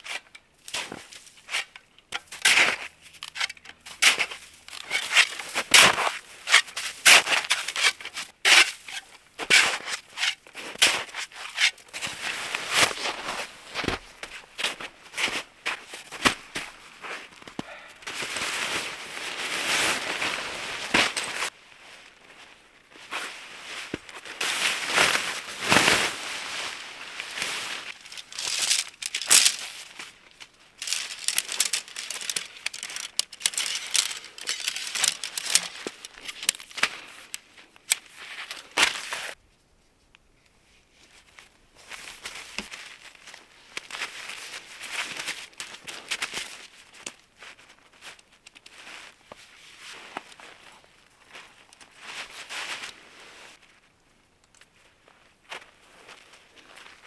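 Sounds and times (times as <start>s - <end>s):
footsteps crunching snow: 27.0s - 29.8s.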